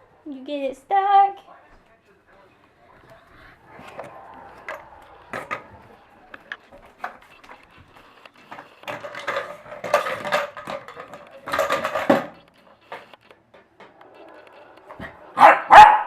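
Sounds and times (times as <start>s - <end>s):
toy clattering and rattling: 4.0s - 15.0s.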